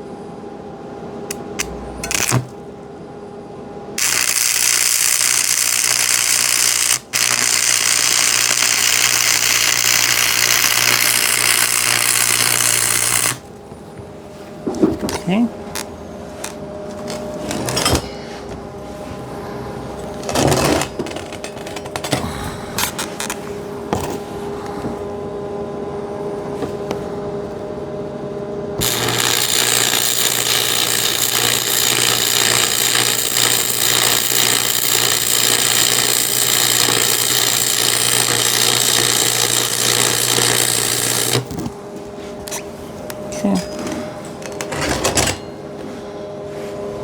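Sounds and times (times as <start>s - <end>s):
steady machine hum: 0.0s - 47.0s
welding arc crackling: 1.3s - 2.5s, 4.0s - 13.5s, 28.8s - 41.6s.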